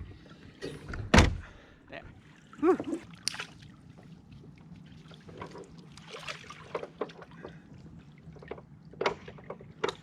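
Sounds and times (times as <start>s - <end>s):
water lapping hull: 1.4s - 10.0s.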